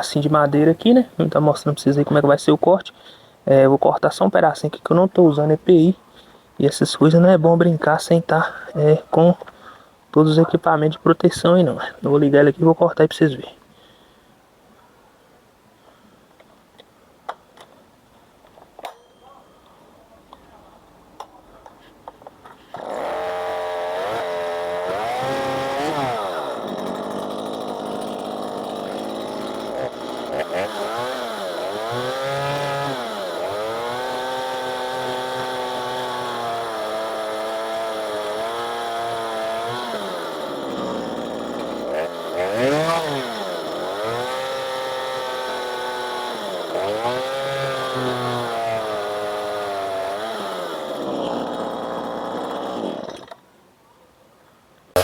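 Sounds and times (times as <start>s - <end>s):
chainsaw revving and cutting wood: 22.8s - 53.4s.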